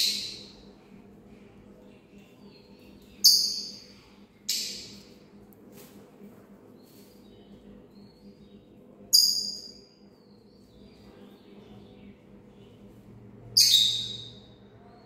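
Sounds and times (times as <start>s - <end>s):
faint bird chirps: 13.6s - 15.0s.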